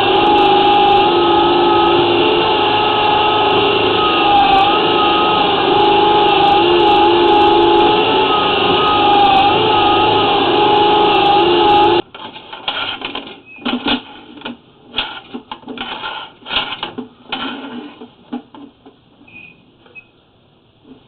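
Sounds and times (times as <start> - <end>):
drain-cleaning machine whining: 0.0 - 12.0
metallic clattering and knocks: 12.1 - 19.3.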